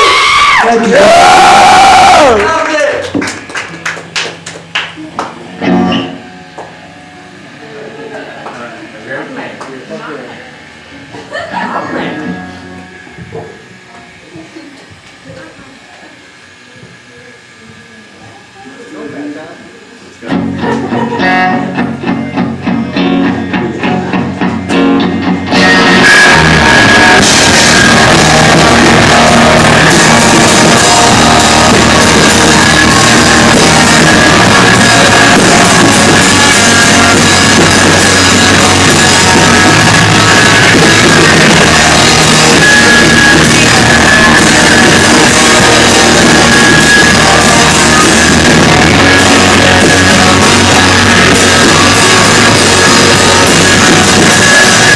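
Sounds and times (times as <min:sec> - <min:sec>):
rock band playing: 0:00.0 - 0:07.6, 0:20.3 - 0:54.9
guitar picked notes: 0:03.7 - 0:08.0, 0:10.6 - 0:14.2, 0:20.2 - 0:54.9.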